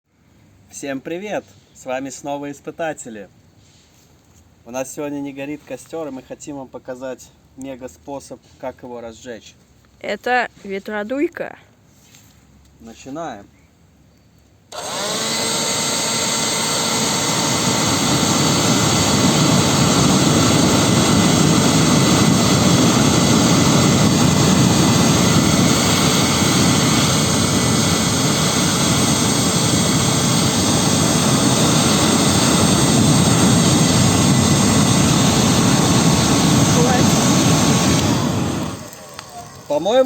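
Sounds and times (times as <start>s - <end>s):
leaf blower running: 14.7s - 40.0s.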